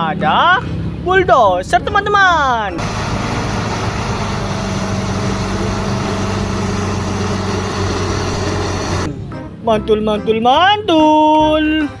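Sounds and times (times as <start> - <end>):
bulldozer engine droning: 2.8 - 9.5.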